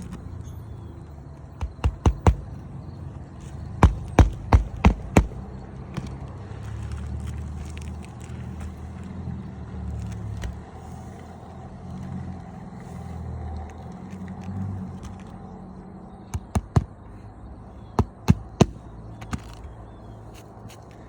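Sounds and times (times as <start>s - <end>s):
sharp knocks: 1.6s - 2.5s, 3.8s - 5.4s, 16.3s - 16.9s, 18.0s - 19.6s.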